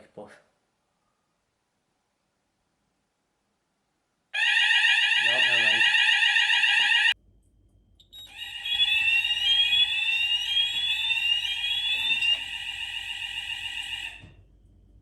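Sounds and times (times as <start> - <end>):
fire alarm sweeping tones: 4.4 - 7.2, 7.9 - 15.0.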